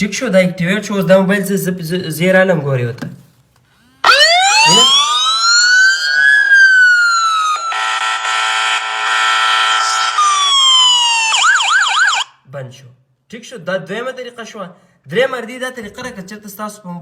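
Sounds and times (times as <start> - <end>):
phone alarm siren: 4.0 - 12.4.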